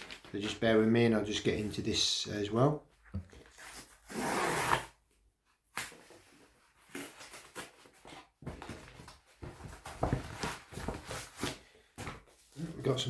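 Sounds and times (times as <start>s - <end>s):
packaging rustling and crinkling: 0.0s - 0.6s.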